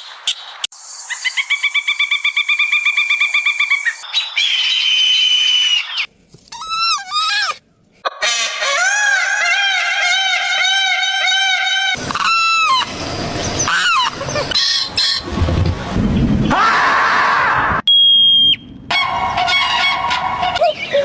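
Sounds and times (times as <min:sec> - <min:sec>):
bird and animal calls: 0:01.1 - 0:07.6, 0:10.2 - 0:15.3, 0:19.4 - 0:21.0.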